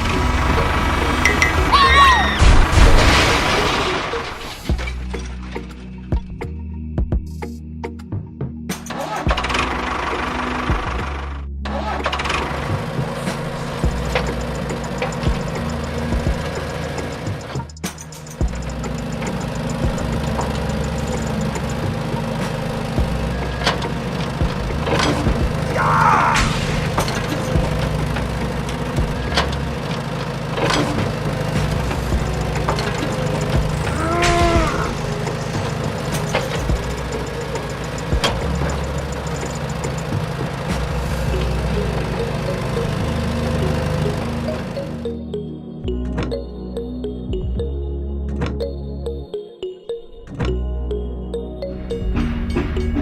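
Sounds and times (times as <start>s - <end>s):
engine idling: 0.0s - 6.2s, 8.8s - 45.2s
plucked notes over steady bass: 31.6s - 49.4s, 50.4s - 53.0s.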